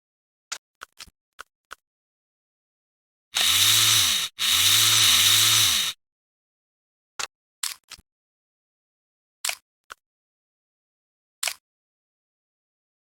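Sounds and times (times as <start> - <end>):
power tool motor pulsing: 3.4 - 6.0.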